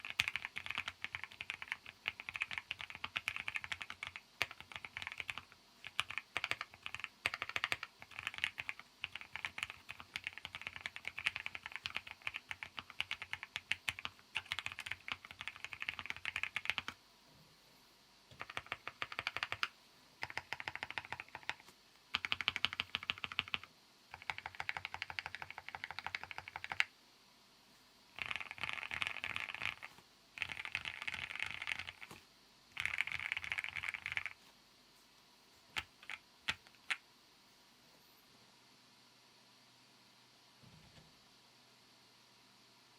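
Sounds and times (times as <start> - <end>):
mechanical keyboard typing: 0.0 - 17.0, 18.3 - 26.9, 28.2 - 32.2, 32.8 - 34.4, 35.7 - 37.0.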